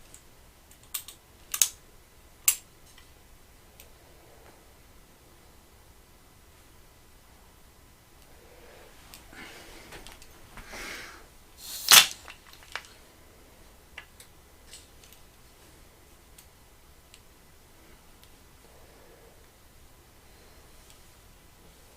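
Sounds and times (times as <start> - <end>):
nail gun firing: 11.8 - 12.3
rustling handling noise: 11.8 - 13.0.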